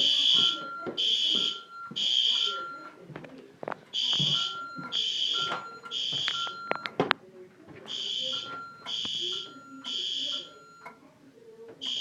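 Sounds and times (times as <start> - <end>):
fire alarm beeps: 0.0 - 3.0, 3.9 - 7.1, 7.9 - 11.0, 11.8 - 12.0.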